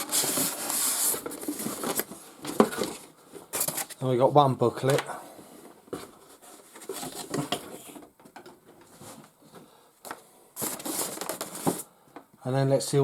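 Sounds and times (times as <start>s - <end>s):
cardboard packaging rustling: 0.0s - 4.1s, 5.8s - 9.4s, 10.6s - 11.9s.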